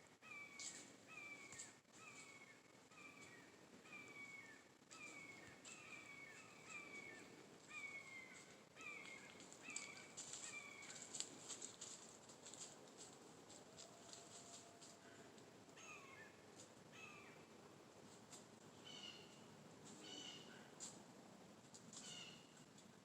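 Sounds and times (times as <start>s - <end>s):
bird calling: 0.2s - 11.2s, 15.8s - 17.5s, 18.8s - 20.8s, 22.0s - 22.6s.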